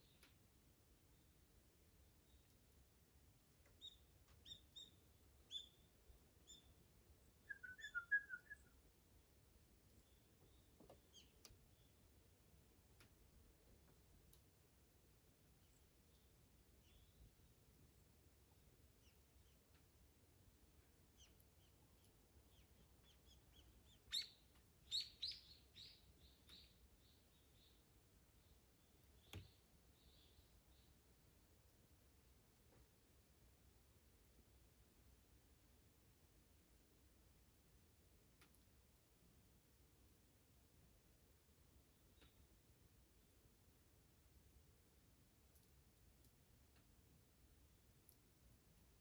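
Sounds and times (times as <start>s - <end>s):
faint bird chirps: 3.8s - 8.8s, 15.6s - 17.6s, 21.2s - 31.0s
faint clicks: 10.8s - 11.6s, 12.9s - 13.2s, 38.4s - 38.8s, 45.5s - 46.9s.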